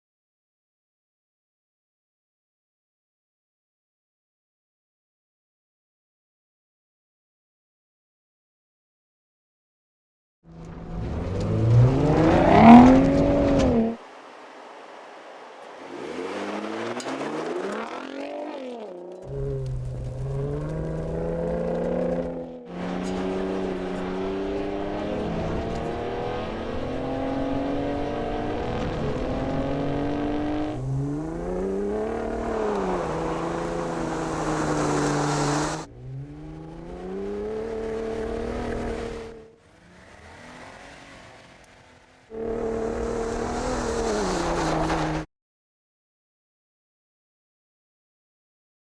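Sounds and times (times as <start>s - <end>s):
pickup engine revving: 10.6s - 45.3s.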